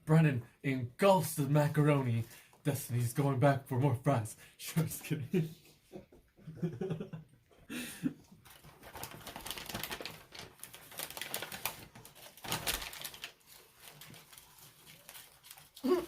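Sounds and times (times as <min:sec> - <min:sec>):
paper wrappers rustling: 0:08.4 - 0:16.0.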